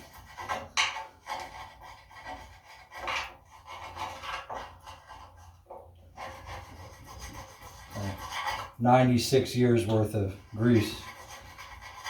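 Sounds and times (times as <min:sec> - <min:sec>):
tool scraping grease off metal: 0:00.0 - 0:08.8.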